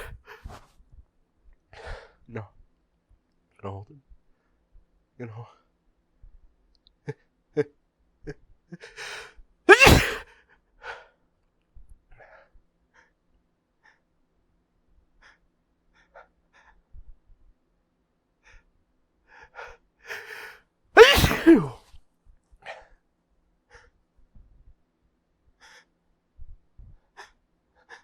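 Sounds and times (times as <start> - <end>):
man sneezing: 0.0 - 0.6, 9.7 - 10.2, 20.1 - 21.8.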